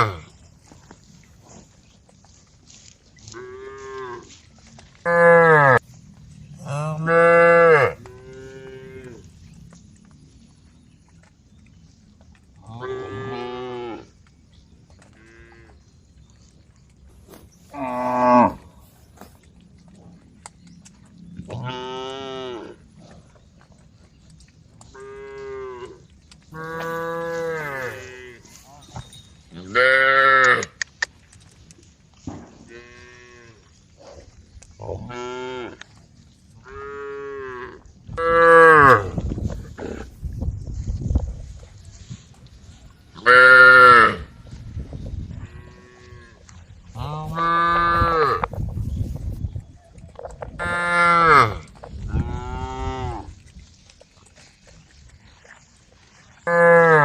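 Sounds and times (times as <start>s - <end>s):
cattle mooing: 0.0s - 0.3s, 5.1s - 5.8s, 6.6s - 9.3s, 17.7s - 18.7s, 25.0s - 28.6s, 47.0s - 48.5s, 50.6s - 53.3s.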